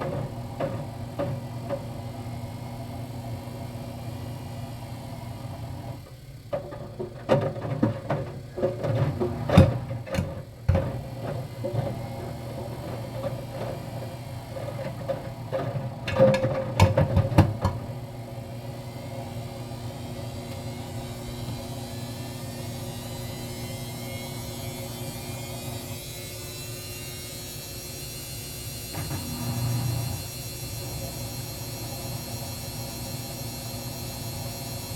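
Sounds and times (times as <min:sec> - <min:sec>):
washer knocking and clattering: 0:00.0 - 0:02.0, 0:06.5 - 0:18.0
motor hum: 0:00.0 - 0:34.9.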